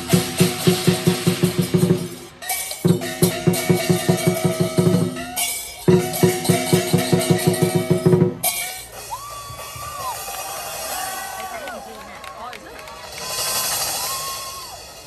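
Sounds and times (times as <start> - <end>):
big drum beating fast: 0.0 - 5.3, 5.9 - 10.1
cymbals ringing: 0.0 - 11.7.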